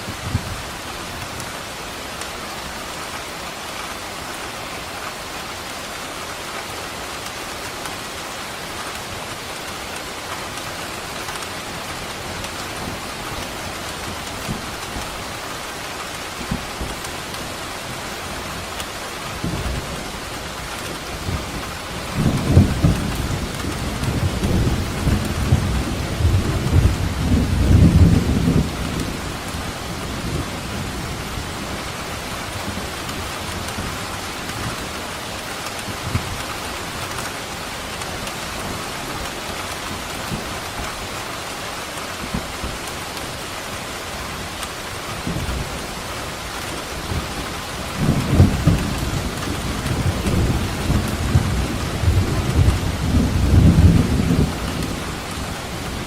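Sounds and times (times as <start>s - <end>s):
heavy rain hissing: 0.0s - 56.0s
thunder rumbling: 20.8s - 31.8s, 45.2s - 56.0s.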